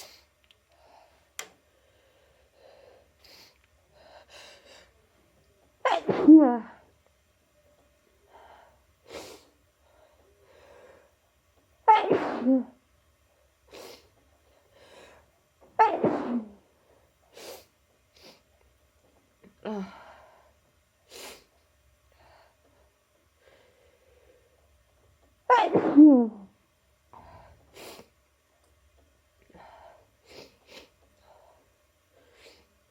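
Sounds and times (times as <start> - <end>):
person sneezing: 5.8 - 6.5, 11.9 - 12.7, 15.8 - 16.6, 25.5 - 26.4.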